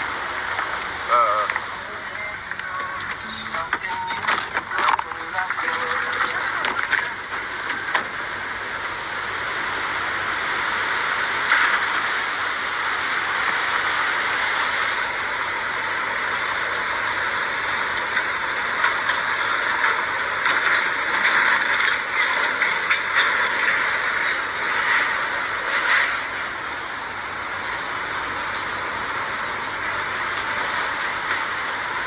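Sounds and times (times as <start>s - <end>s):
floodwater rushing: 0.1s - 15.0s.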